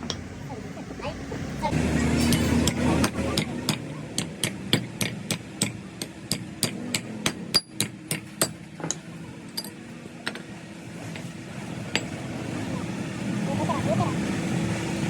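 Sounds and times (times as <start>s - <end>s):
hammer striking metal: 2.2s - 10.5s.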